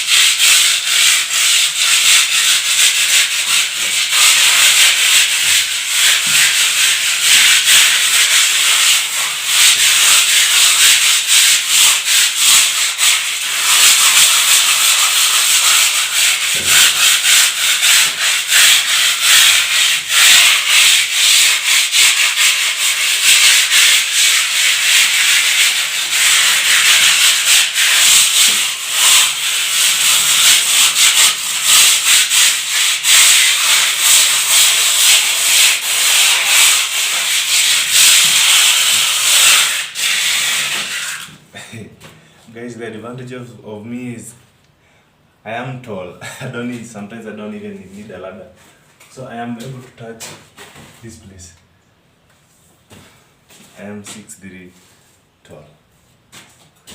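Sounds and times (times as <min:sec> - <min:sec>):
abrasive rubbing on hard surface: 0:00.0 - 0:41.9.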